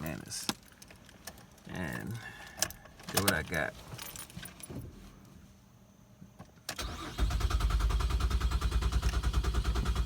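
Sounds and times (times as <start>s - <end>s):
engine cranking on starter: 6.7s - 10.0s.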